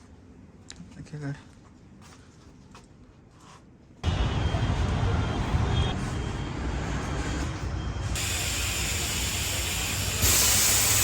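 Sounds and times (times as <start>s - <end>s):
low rumbling noise: 4.0s - 11.0s
loud steady hiss: 8.1s - 11.0s.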